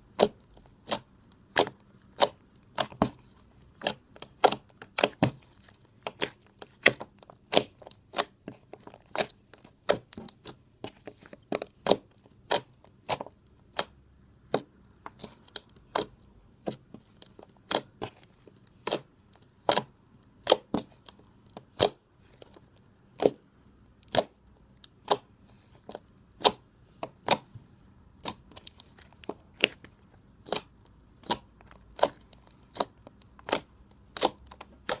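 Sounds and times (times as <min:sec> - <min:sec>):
slime popping sticky: 0:00.1 - 0:22.6, 0:28.1 - 0:35.0.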